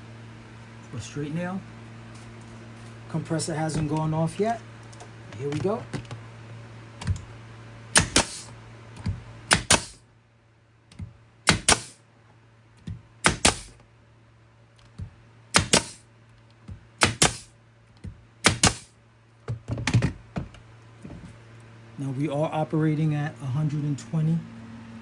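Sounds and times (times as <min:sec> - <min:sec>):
pneumatic nailer firing: 0:07.9 - 0:10.0, 0:11.4 - 0:12.0, 0:13.2 - 0:13.8, 0:15.5 - 0:16.0, 0:17.0 - 0:17.5, 0:18.4 - 0:19.0.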